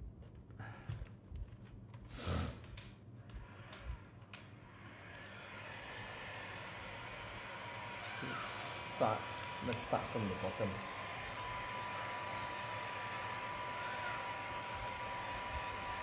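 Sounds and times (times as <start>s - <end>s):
heat gun blowing: 5.0s - 16.0s.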